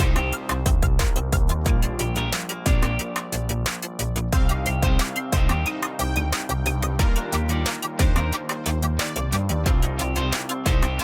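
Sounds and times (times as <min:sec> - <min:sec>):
electronic music with drum beat: 0:00.0 - 0:11.0.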